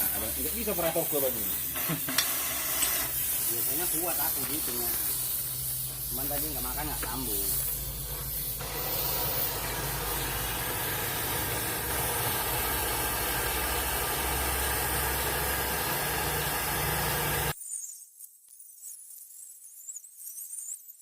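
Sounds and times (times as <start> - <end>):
strong hiss: 0.0 - 17.6
diesel truck engine running: 8.0 - 17.5.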